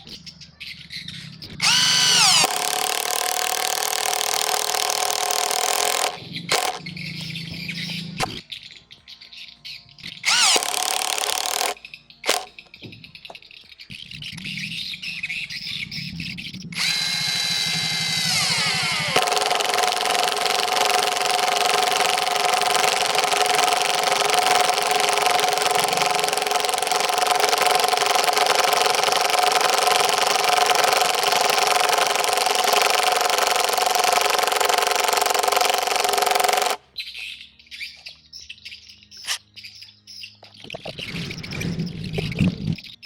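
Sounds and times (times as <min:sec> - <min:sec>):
impact driver whining: 0:01.6 - 0:08.4, 0:10.1 - 0:12.5, 0:16.8 - 0:36.8.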